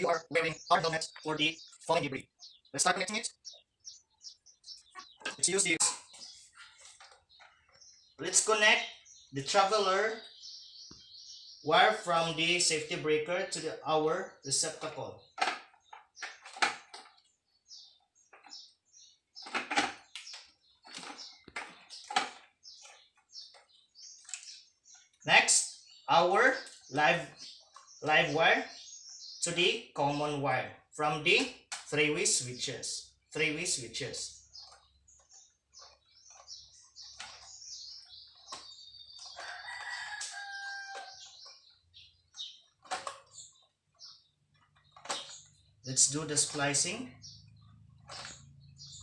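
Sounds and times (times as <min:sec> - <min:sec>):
wires and hand tools rustling: 0:04.3 - 0:10.3, 0:14.5 - 0:25.4, 0:26.2 - 0:28.4, 0:33.4 - 0:49.0
rooster crowing: 0:39.4 - 0:41.3.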